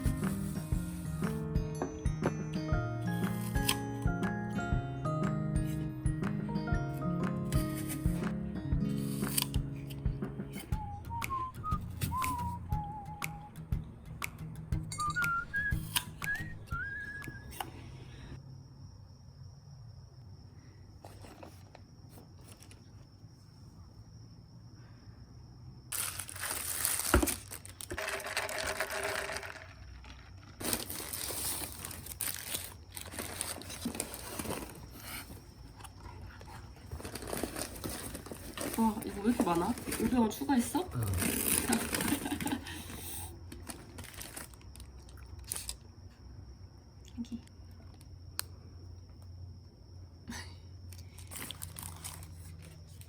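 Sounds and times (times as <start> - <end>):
food packaging crinkling: 25.9 - 40.4, 41.0 - 42.7, 43.5 - 45.8, 50.9 - 53.0.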